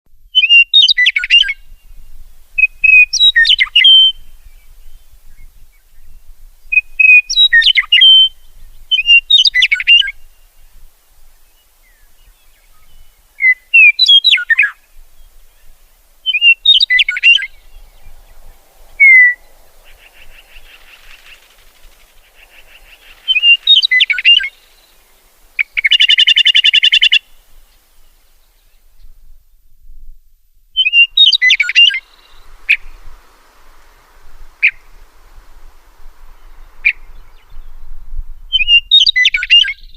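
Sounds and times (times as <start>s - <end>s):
songbird chirping: 0.3s - 29.7s, 30.8s - 39.9s
bird rapid trill: 16.3s - 27.2s.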